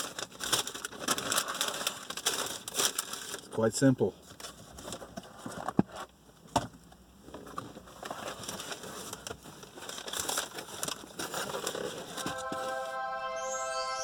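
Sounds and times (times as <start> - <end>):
crinkling handling noise: 0.0 - 3.6, 7.2 - 12.6.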